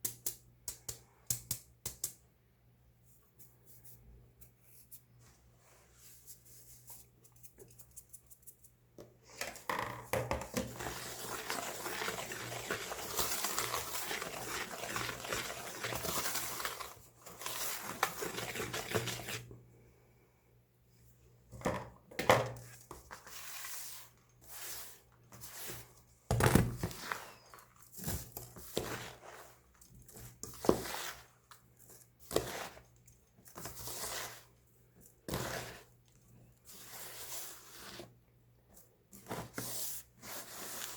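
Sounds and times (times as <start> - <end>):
baking soda crunching and crackling: 10.6 - 19.5, 26.7 - 40.9.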